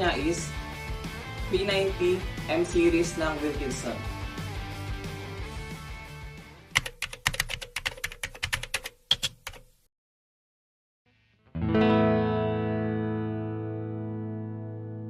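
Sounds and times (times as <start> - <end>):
distorted electric guitar chord: 11.5 - 15.0.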